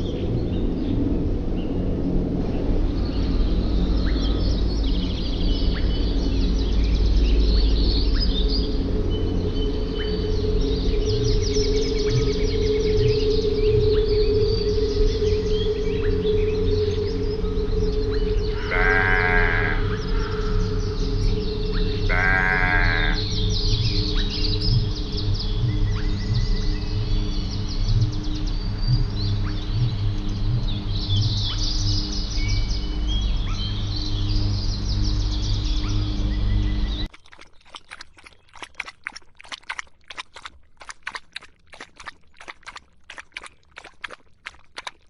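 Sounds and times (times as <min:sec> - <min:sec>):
small birds chirping: 0:04.0 - 0:45.0
bird chirps: 0:17.8 - 0:37.1
bird trill: 0:18.0 - 0:26.4
farm animal bleating: 0:18.6 - 0:19.9, 0:22.1 - 0:23.2
steady low hum: 0:23.2 - 0:37.1.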